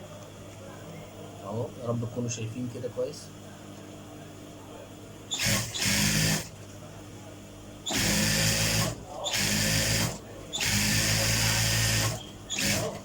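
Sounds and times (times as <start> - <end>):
serger sewing machine running: 5.3 - 6.5, 7.9 - 13.0.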